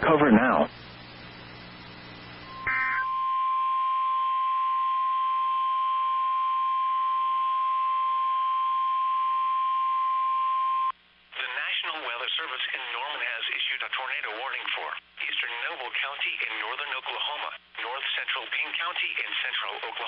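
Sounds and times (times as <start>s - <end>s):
faint radio hiss: 0.0s - 3.0s, 10.9s - 20.0s
steady single-pitch alarm tone: 2.4s - 10.9s
short high chirp: 2.5s - 3.3s.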